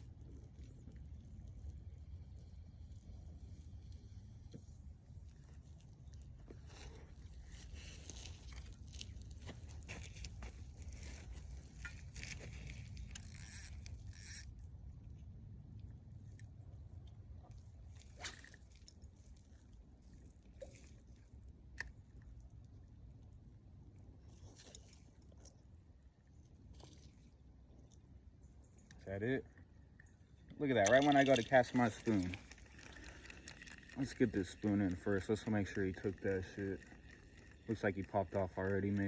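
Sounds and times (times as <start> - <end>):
handling noises scraping and rustling: 6.4 - 14.0.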